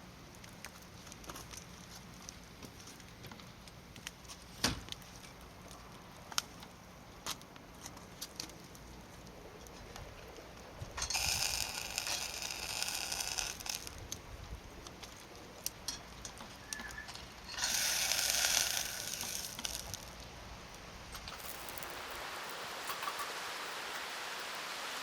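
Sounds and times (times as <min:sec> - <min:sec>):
wood fire crackling: 0:00.0 - 0:25.0
loud hissing bursts: 0:11.0 - 0:14.0, 0:17.4 - 0:20.3, 0:20.9 - 0:25.0.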